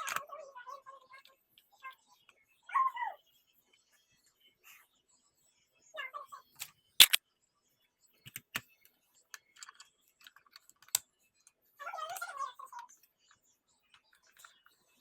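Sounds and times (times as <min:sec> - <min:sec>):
clicks and taps of handled parts: 0:08.2 - 0:11.6.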